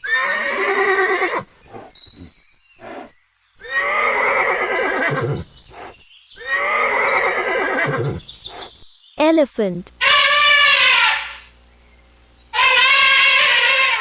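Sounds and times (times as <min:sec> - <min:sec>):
horse whinnying: 0:00.0 - 0:08.2, 0:10.0 - 0:11.5, 0:12.6 - 0:14.0.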